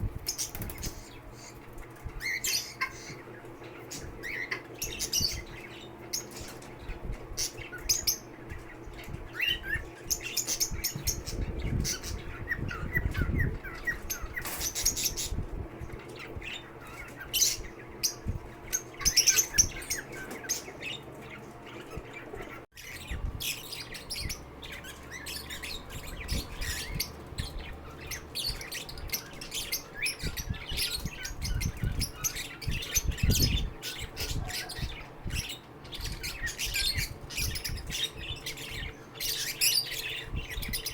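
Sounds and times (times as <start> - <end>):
lovebirds chirping and squawking: 0.0 - 40.9.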